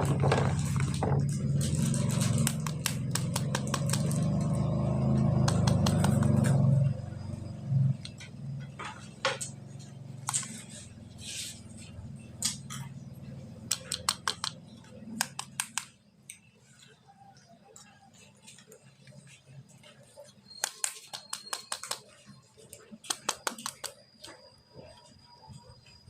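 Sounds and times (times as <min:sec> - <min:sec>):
packaging rustling: 0:00.0 - 0:04.2
low hum: 0:00.0 - 0:20.6.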